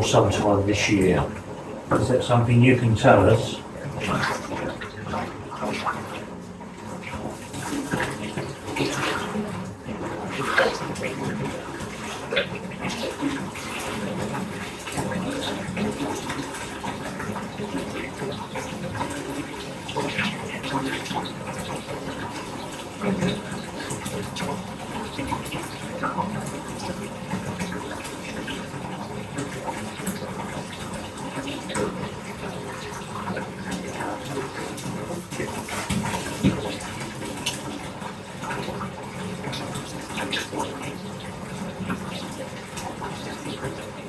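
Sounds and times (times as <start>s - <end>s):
small water splashes: 0.0s - 44.0s
tap water pouring into bathtub: 0.0s - 44.0s.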